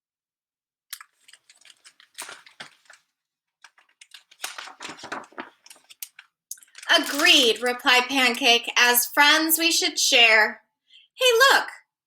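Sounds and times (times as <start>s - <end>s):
book page turning: 1.0s - 7.8s.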